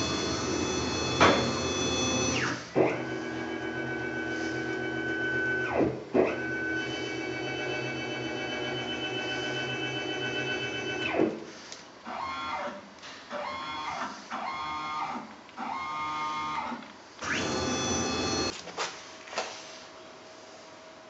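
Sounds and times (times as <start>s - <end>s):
stepper motors whining: 0.0s - 5.8s, 17.2s - 18.5s.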